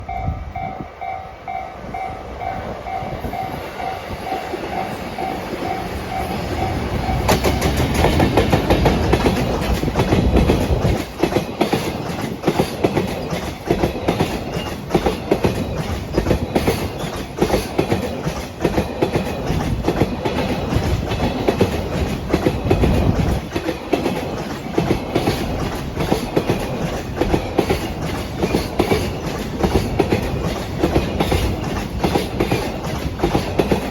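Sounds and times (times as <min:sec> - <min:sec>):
level crossing warning bell: 0:00.0 - 0:07.8
electric locomotive passing: 0:00.0 - 0:33.9
train wheels clacking over rail joints: 0:02.4 - 0:33.9.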